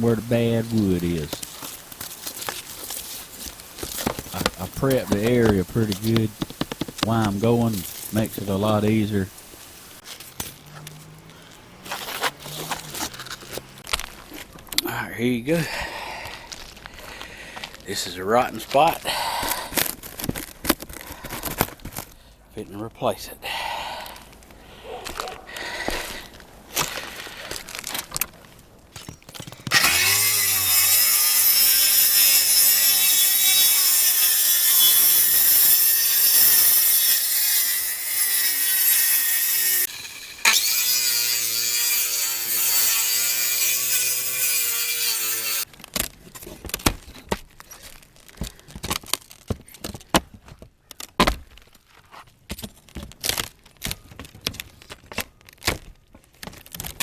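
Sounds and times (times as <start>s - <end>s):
sharp knocks and scrapes: 0.8s - 8.8s
power saw cutting wood: 4.0s - 9.2s, 29.7s - 45.7s.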